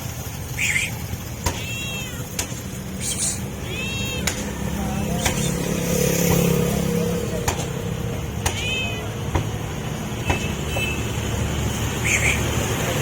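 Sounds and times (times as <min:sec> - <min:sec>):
low traffic rumble: 0:00.0 - 0:13.0
sharp clicks: 0:00.6 - 0:04.6
cat meowing: 0:00.6 - 0:07.0, 0:07.6 - 0:09.3.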